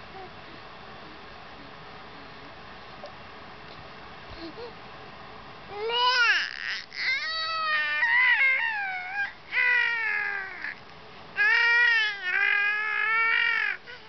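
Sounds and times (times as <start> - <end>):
baby high-pitched calls: 5.7 - 10.8, 11.4 - 14.0.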